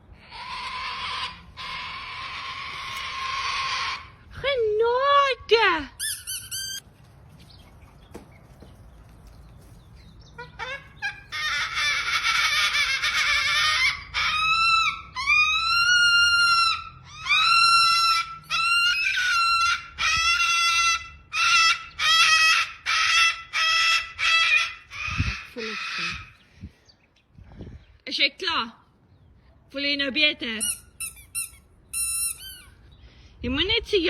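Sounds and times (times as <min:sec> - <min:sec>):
cockatoo screaming: 0:00.2 - 0:04.2, 0:10.5 - 0:26.4.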